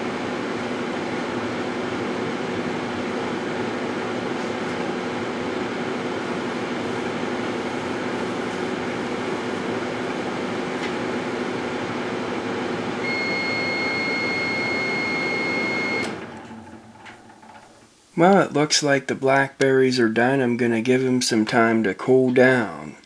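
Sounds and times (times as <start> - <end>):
microwave oven humming: 0.0 - 18.0
steady high tone: 13.0 - 16.1.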